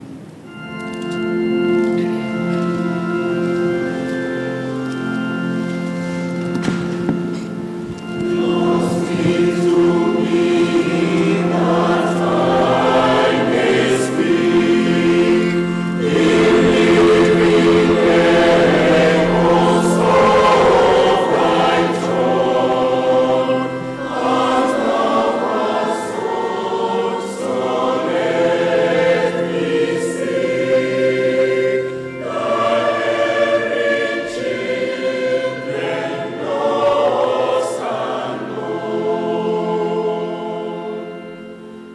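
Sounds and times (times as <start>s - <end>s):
church choir singing a hymn: 1.3s - 41.9s
low held accompaniment note: 5.4s - 38.0s.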